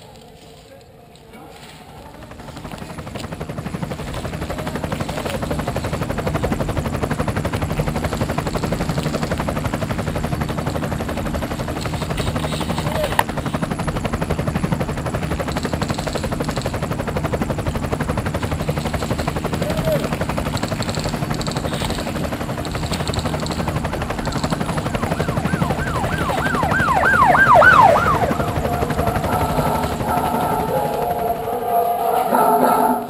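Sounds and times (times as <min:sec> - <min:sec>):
helicopter rotor beating: 0:01.6 - 0:33.0
wailing siren sweeps: 0:23.9 - 0:33.0.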